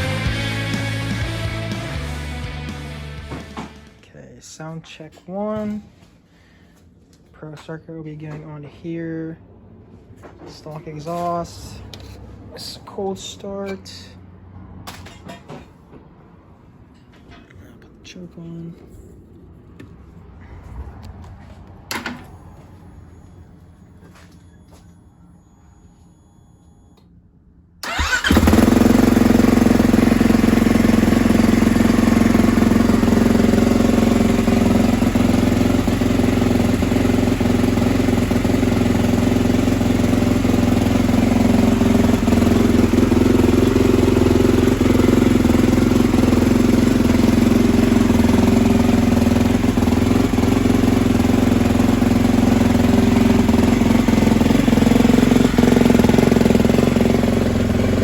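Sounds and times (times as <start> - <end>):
motorcycle engine starting and running: 0.0 - 4.0, 27.8 - 58.0.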